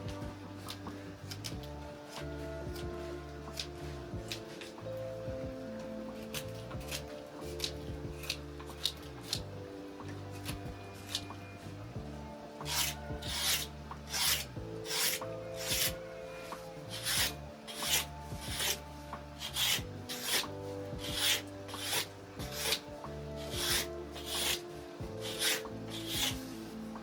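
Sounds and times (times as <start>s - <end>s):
background music: 0.0s - 27.0s
hand tool rasping on surface: 12.6s - 26.8s.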